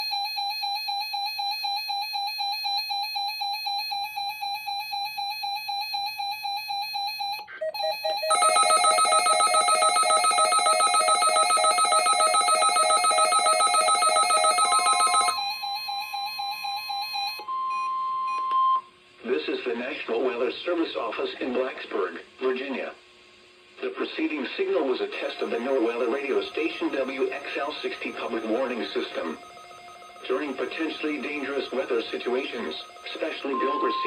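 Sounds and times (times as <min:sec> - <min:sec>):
steady warning alarm tone: 0:00.0 - 0:18.8, 0:25.2 - 0:34.0
dense electronic alarm: 0:03.2 - 0:18.4, 0:25.2 - 0:34.0.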